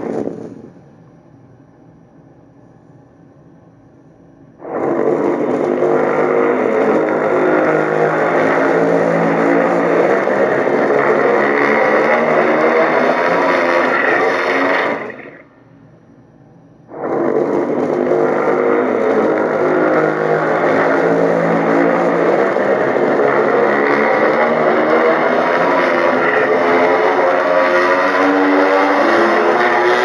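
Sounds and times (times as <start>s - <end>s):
monster roar: 4.6s - 15.4s, 16.9s - 30.0s.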